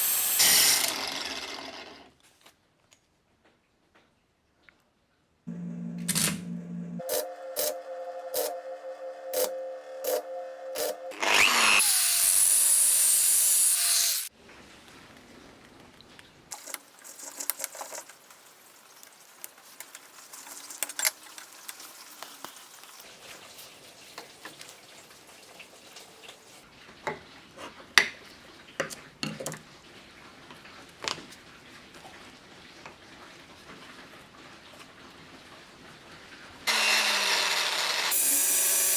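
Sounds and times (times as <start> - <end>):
power tool running: 0.0 - 2.1, 9.3 - 14.3, 36.7 - 38.9.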